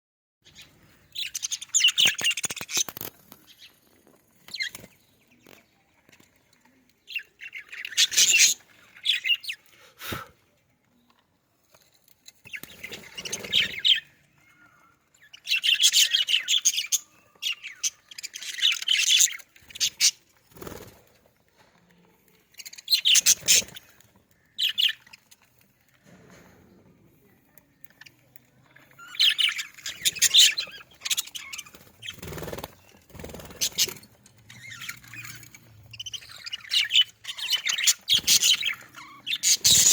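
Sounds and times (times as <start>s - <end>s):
budgerigars chirping: 0.4s - 3.8s, 7.1s - 9.6s, 12.6s - 20.8s, 22.6s - 25.3s, 29.0s - 39.9s.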